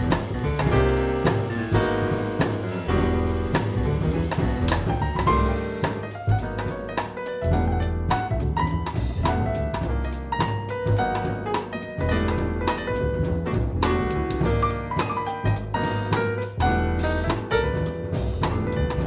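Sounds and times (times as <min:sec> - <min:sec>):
bass: 0:00.0 - 0:19.0
drum kit and cymbals: 0:00.0 - 0:19.0
jazz piano: 0:00.0 - 0:19.0.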